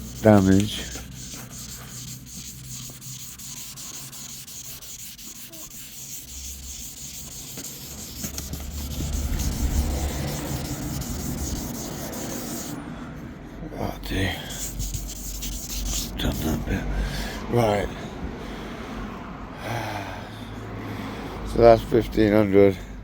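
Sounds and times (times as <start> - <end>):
sandpaper rubbing car paint: 0.0 - 12.8, 14.2 - 16.7.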